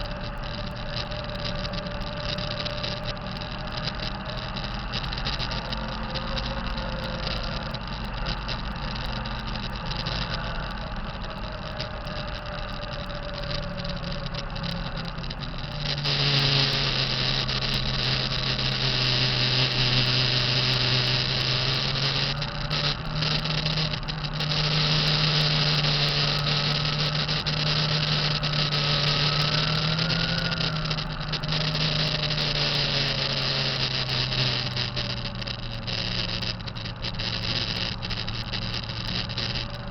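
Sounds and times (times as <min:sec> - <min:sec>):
truck diesel engine running: 0:00.0 - 0:39.9
high turbo hiss: 0:14.5 - 0:39.9.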